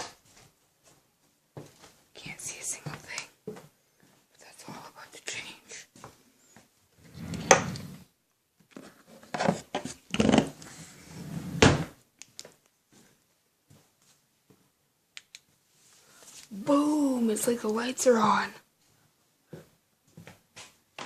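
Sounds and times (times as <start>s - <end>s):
sharp clicks: 15.2s - 15.5s.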